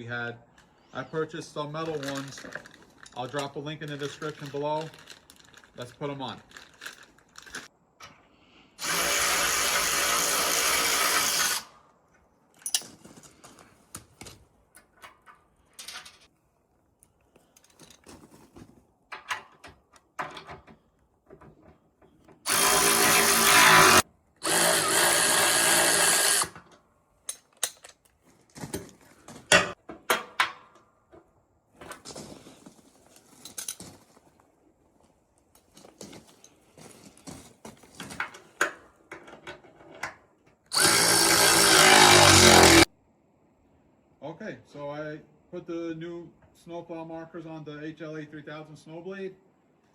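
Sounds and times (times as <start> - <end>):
clicks and clinks of tools: 1.8 - 5.6, 12.5 - 13.0, 26.6 - 28.2
power drill running: 8.8 - 11.7, 22.5 - 26.6, 40.7 - 42.9.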